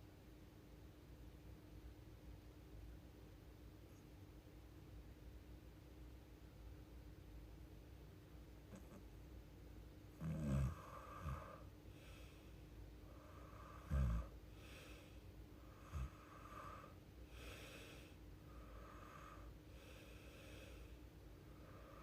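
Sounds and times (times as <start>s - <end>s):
short low snores: 10.2s - 11.6s, 13.3s - 14.3s
woman breathing in sleep: 10.3s - 22.0s.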